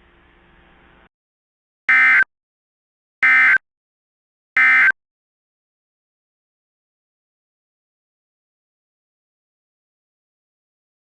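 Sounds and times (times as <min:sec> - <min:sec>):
short data tone bursts: 0:01.9 - 0:02.3, 0:03.2 - 0:03.6, 0:04.6 - 0:05.0.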